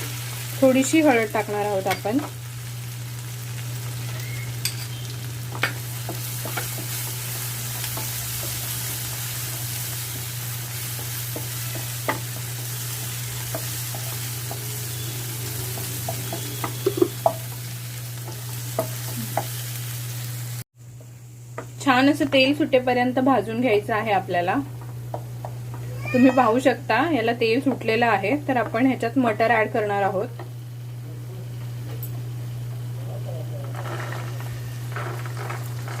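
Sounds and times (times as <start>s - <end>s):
paste sizzling in oil: 0.0s - 20.6s.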